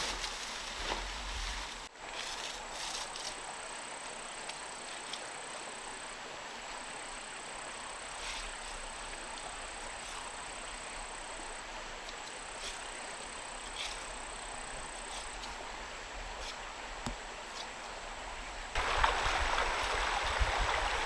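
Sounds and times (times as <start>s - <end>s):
steady rain: 18.7s - 21.0s.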